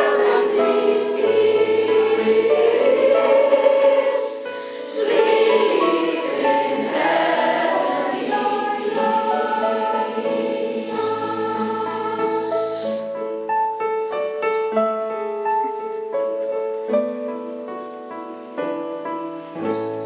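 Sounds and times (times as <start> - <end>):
choir singing held notes: 0.0 - 13.6.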